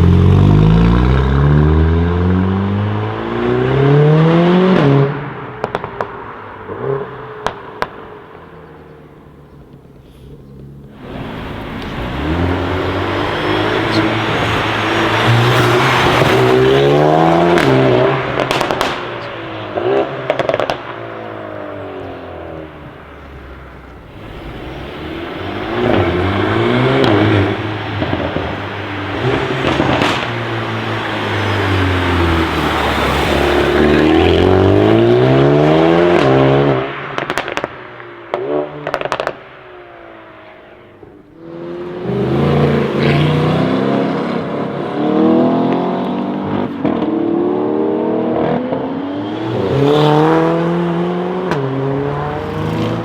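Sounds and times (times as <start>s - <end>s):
exhaust crackles and pops: 5.6s - 35.3s, 36.1s - 39.8s
car engine revving hard: 10.9s - 37.3s, 41.5s - 53.0s.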